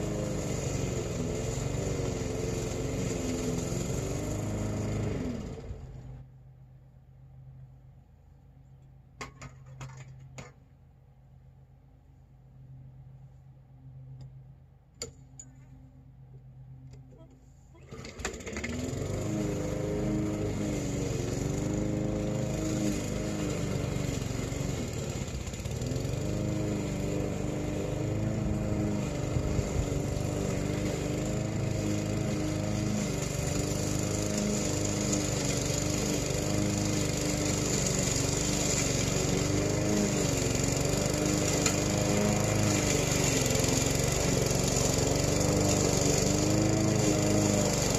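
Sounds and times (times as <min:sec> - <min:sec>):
lawn mower engine running: 0:00.0 - 0:06.3, 0:17.7 - 0:47.9.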